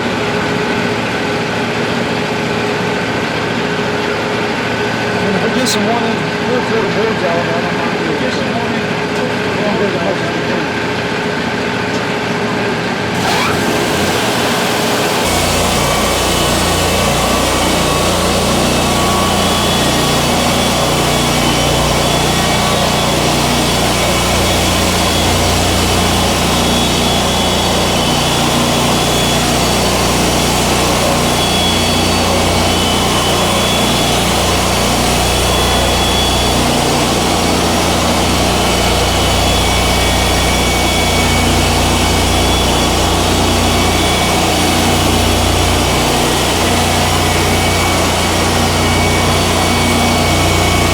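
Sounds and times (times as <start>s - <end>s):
band saw blade sawing log: 13.1s - 50.9s.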